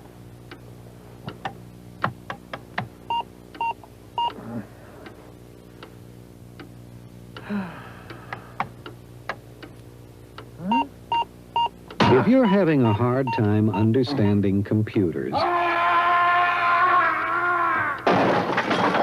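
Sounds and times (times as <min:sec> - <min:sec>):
steady hum: 0:00.0 - 0:18.9
short beeps: 0:10.6 - 0:13.9.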